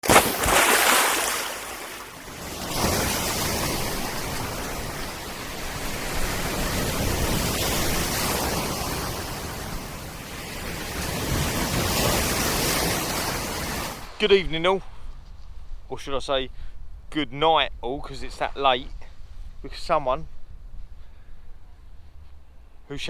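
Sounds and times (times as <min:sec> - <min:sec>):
sea surf: 0:00.0 - 0:15.0
wind: 0:00.0 - 0:23.0.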